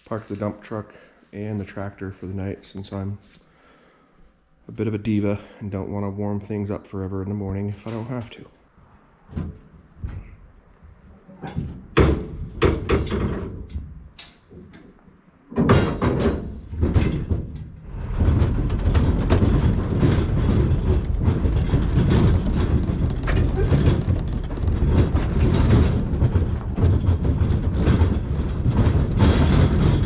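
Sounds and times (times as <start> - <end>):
knocks and clunks: 9.3 - 30.0
door slam: 11.6 - 13.7.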